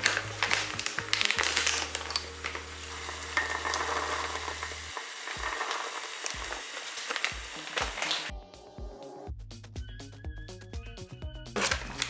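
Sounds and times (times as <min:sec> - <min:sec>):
crackling sizzle in a pot: 0:00.0 - 0:08.3, 0:11.6 - 0:12.0
stirring in a pot: 0:00.0 - 0:08.3.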